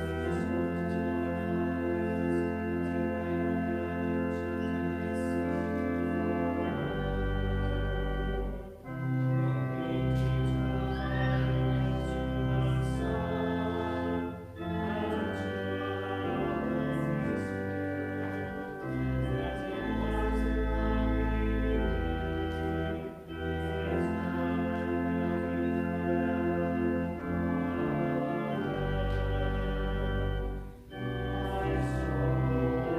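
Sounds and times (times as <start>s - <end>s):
church organ playing chords: 0.0s - 32.9s
voices singing: 9.5s - 25.9s, 28.4s - 32.9s.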